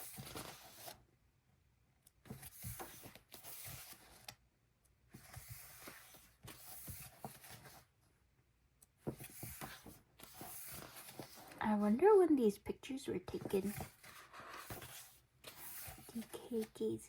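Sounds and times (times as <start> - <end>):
photo prints rustling and sliding: 0.0 - 1.0, 2.3 - 4.4, 5.2 - 7.9, 9.0 - 12.0, 13.2 - 17.0.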